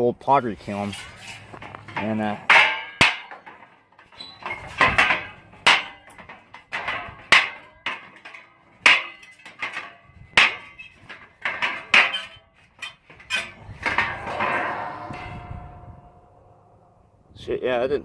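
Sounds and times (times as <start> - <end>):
metal striking steel with ringing: 13.4 - 17.2.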